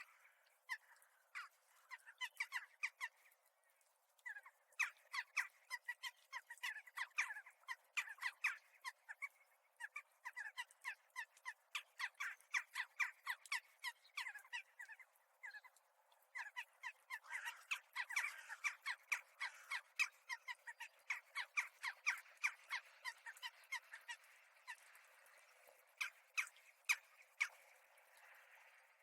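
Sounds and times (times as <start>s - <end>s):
crows calling: 16.4s - 24.8s.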